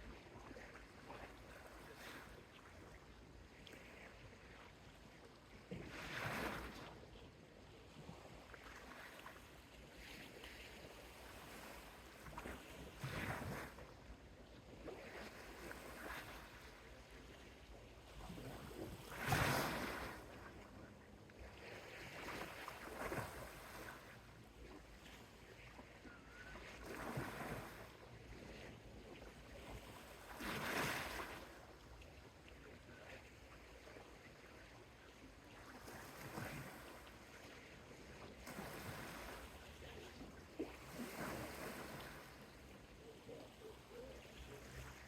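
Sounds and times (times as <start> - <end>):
gentle waves washing onto beach: 0.0 - 45.0
faint hiss of the sea: 18.3 - 24.4.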